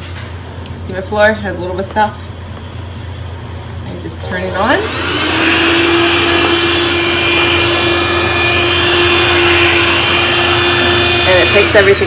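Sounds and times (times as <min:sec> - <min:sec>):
handheld vacuum cleaner running: 0:04.4 - 0:12.0.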